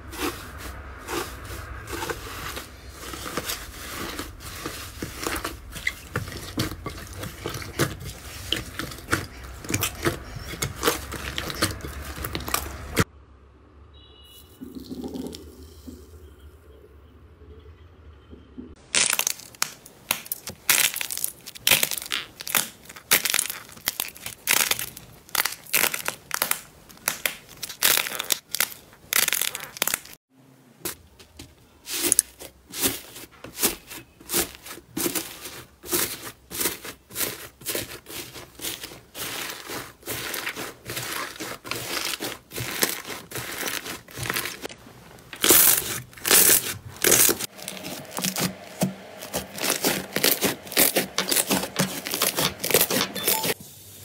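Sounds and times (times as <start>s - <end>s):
slime crackling when squeezed: 18.9s - 30.2s.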